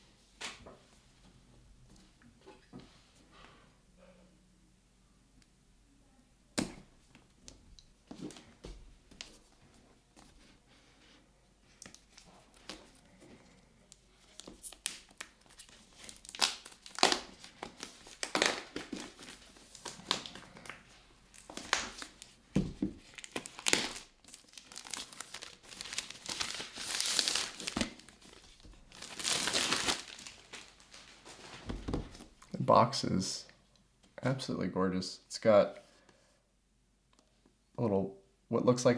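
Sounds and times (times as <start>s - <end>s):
packaging crinkling and tearing: 13.9s - 32.3s
packaging rustling: 13.9s - 32.5s.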